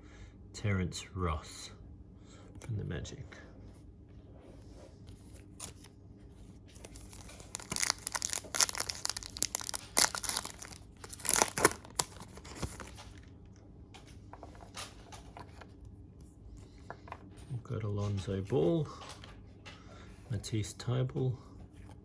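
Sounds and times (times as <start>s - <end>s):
foil wrapper tearing and crinkling: 6.8s - 13.2s.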